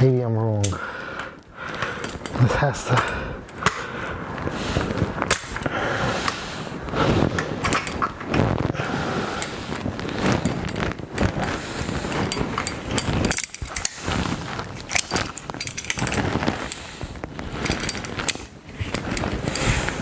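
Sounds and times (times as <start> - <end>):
vise grips clinking and scraping on metal: 1.8 - 3.8, 7.4 - 8.2, 9.3 - 20.0.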